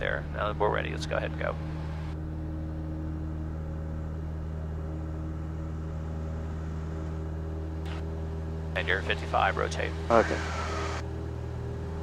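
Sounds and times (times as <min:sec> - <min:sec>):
light aircraft engine drone: 0:00.0 - 0:12.0.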